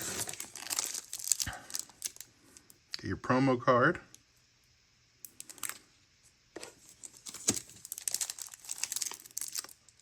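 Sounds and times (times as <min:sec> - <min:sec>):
packaging crinkling and rustling: 0:00.0 - 0:02.3, 0:05.4 - 0:05.8, 0:06.6 - 0:10.0.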